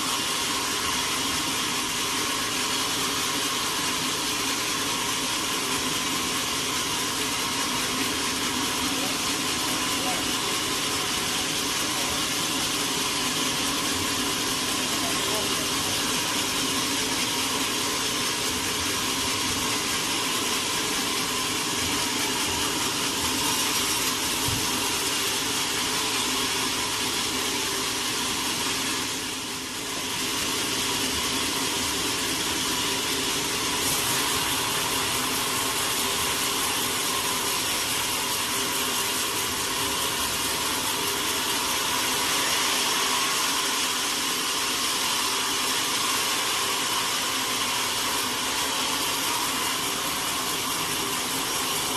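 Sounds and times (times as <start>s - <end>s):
sawmill machinery whirring: 0.0s - 51.9s.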